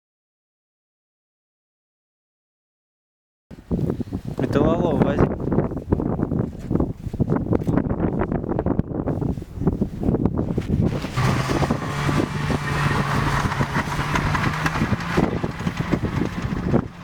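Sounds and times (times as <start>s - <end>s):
vehicle engine hum: 10.6s - 17.0s
rattles and knocks: 11.2s - 17.0s.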